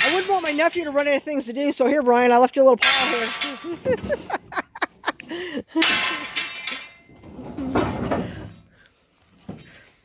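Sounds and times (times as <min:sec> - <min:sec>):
scrap metal crashing: 0:00.0 - 0:01.3, 0:02.8 - 0:04.6, 0:05.8 - 0:08.7
dull metal crash: 0:05.8 - 0:08.6.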